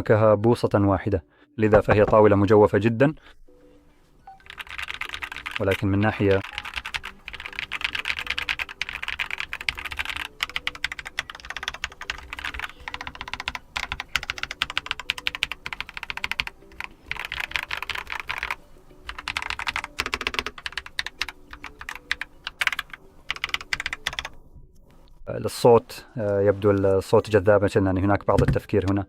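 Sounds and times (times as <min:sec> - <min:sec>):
mechanical keyboard typing: 0:04.4 - 0:24.4.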